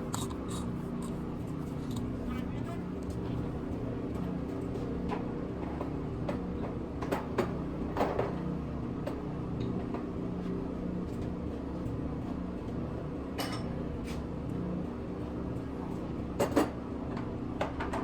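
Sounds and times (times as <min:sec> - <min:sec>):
low mechanical hum: 0:00.0 - 0:18.0
tools clicking and clanking: 0:00.1 - 0:01.2.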